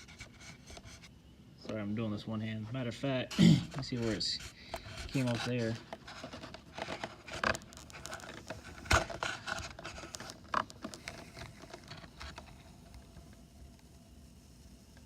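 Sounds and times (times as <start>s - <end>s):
handling rubbing and scraping: 3.7s - 12.6s.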